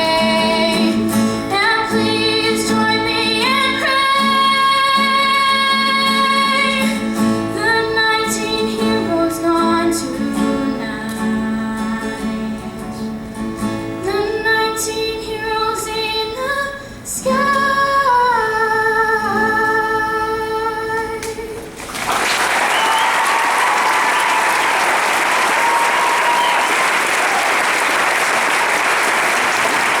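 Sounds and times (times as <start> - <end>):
woman singing: 0.0 - 13.1, 14.0 - 21.7
guitar accompaniment: 0.0 - 21.9
audience applause: 21.8 - 30.0.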